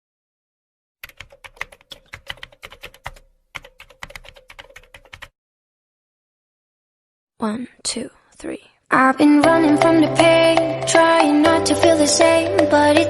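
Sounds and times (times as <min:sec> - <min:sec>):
rapid keyboard typing: 0:01.0 - 0:05.3.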